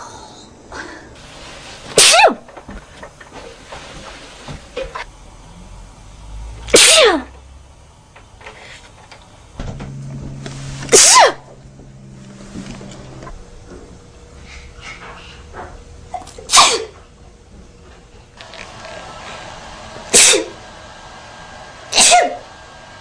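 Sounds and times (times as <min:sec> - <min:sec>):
woman sneezing: 0:02.0 - 0:02.4, 0:06.7 - 0:07.3, 0:10.9 - 0:11.5, 0:16.5 - 0:17.0, 0:20.1 - 0:20.6, 0:21.9 - 0:22.4.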